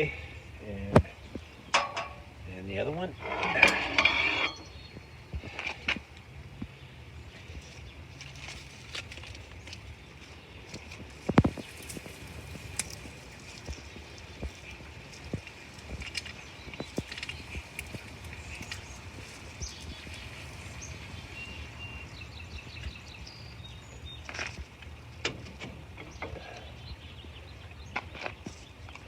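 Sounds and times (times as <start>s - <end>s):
bird chirps: 1.2s - 5.4s, 9.6s - 25.2s
metal bike rack clicks and knocks: 1.7s - 2.2s.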